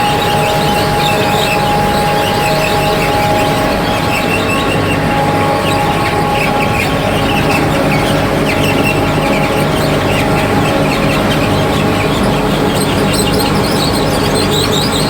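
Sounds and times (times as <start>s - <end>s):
machinery humming: 0.0s - 15.0s.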